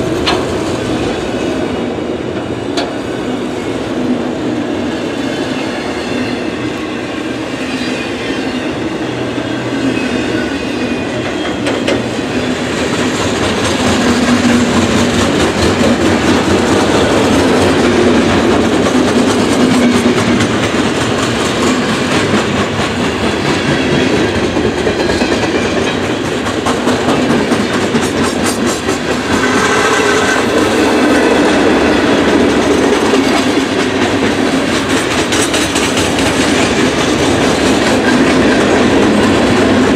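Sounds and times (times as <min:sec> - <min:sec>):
train wheels clattering over rail joints: 0:11.1 - 0:39.9.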